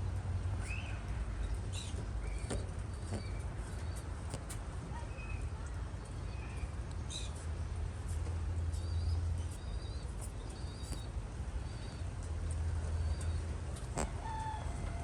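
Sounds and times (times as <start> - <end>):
low steady rumble: 0.0 - 15.0
rabbit squeaking: 0.6 - 4.6, 8.7 - 15.0.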